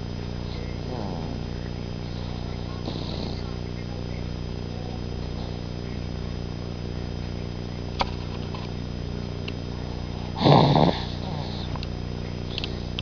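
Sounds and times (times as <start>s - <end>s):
steady hum: 0.0s - 13.0s
baby snoring: 0.8s - 1.5s, 10.2s - 11.8s.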